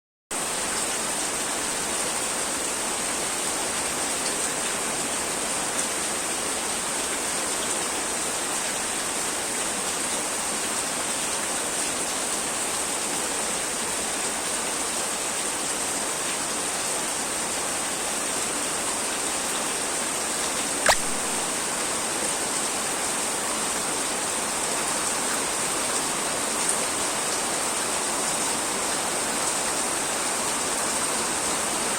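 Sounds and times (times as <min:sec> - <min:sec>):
steady rain falling: 0:00.4 - 0:31.9
sharp click: 0:20.8 - 0:21.2.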